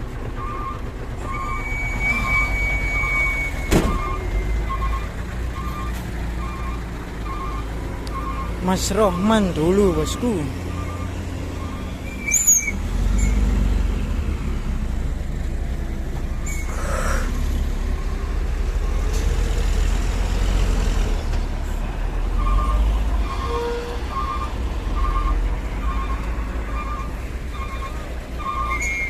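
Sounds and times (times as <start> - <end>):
diesel truck engine rumbling: 0.0 - 29.0
reversing alarm beeping: 0.4 - 12.8, 22.4 - 29.0.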